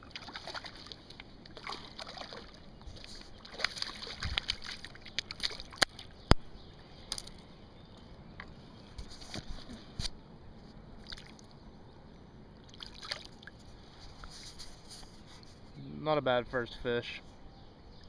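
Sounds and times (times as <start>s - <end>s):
fish splashing in water: 0.0s - 6.3s, 12.6s - 13.6s.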